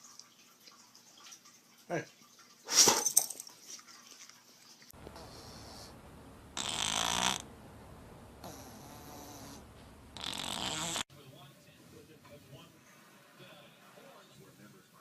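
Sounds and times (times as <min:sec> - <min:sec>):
animal snoring: 0:05.0 - 0:07.5, 0:08.4 - 0:11.0.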